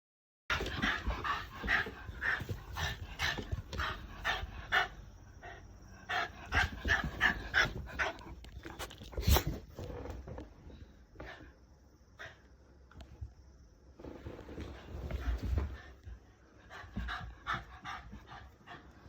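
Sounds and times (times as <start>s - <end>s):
dog panting: 0.5s - 8.4s, 16.6s - 19.0s.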